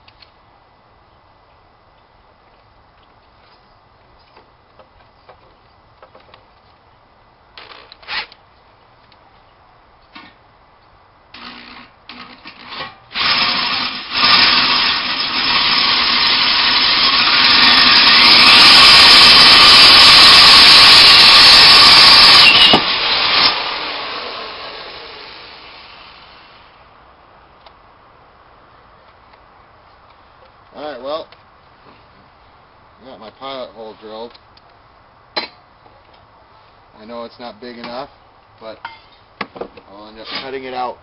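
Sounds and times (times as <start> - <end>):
power drill boring: 11.4 - 26.4.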